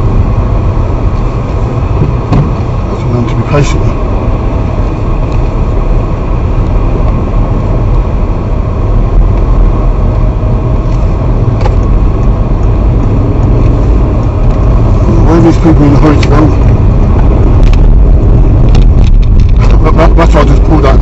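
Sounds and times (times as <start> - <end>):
car engine rumble: 0.0 - 21.0
road noise: 0.0 - 21.0.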